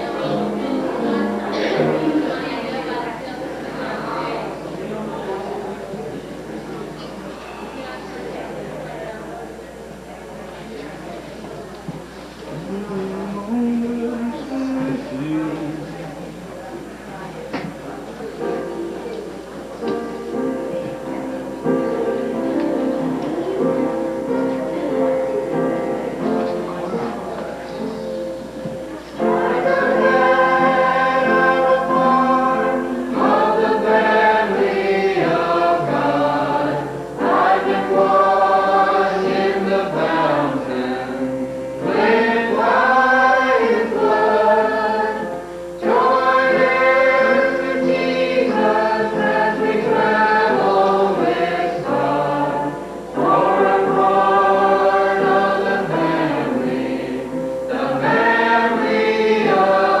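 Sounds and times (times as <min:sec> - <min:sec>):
choir singing gospel: 0:00.0 - 0:06.6, 0:19.8 - 1:00.0.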